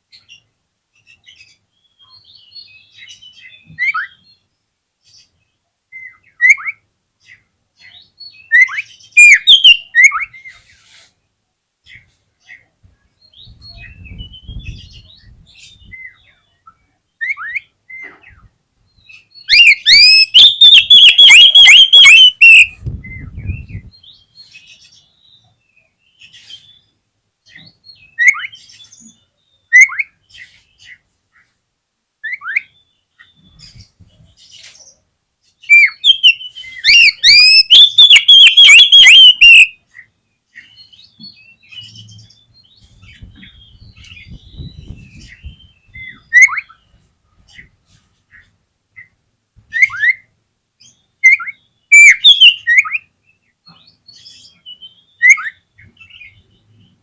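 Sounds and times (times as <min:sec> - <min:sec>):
bird singing whistles and chirps: 0:07.8 - 0:10.6, 0:13.2 - 0:25.4, 0:35.6 - 0:39.8, 0:40.6 - 0:46.9, 0:49.7 - 0:57.0
bird fast repeated notes: 0:09.2 - 0:09.8, 0:19.6 - 0:22.8, 0:35.9 - 0:39.7, 0:52.0 - 0:52.8.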